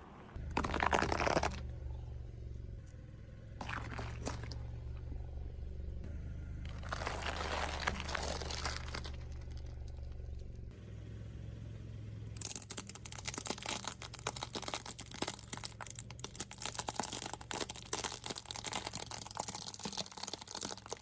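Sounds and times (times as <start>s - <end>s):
car engine hum: 0.0s - 21.0s
tyres crushing crunchy objects: 0.4s - 1.7s, 3.6s - 4.6s, 6.6s - 10.2s, 12.4s - 21.0s.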